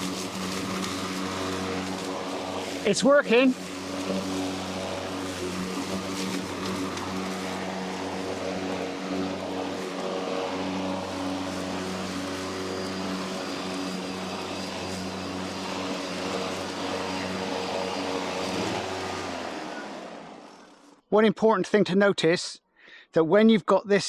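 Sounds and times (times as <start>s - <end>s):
lawn mower running: 0.0s - 21.0s.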